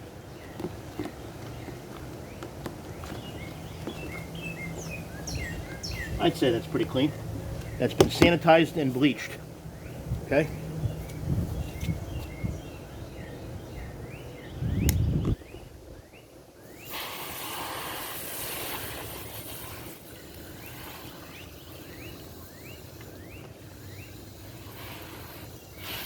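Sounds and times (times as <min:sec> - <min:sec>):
low rumble: 0:14.5 - 0:15.4
rushing hiss: 0:16.8 - 0:26.0.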